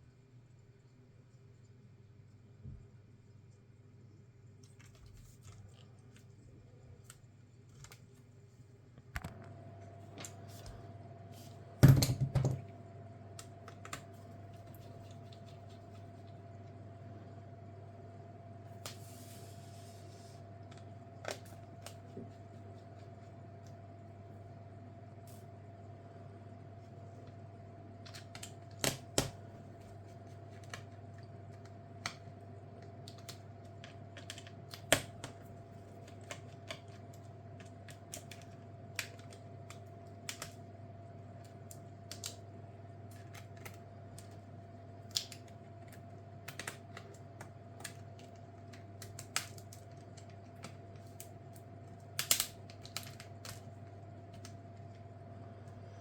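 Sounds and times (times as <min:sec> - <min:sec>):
steady low hum: 0:00.0 - 0:56.0.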